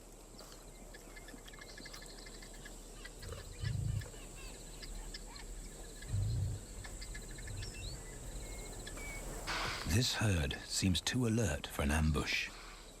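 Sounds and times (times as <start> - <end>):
insects buzzing: 0.0 - 13.0
bird chirps: 0.4 - 10.0
low booms: 6.1 - 8.0.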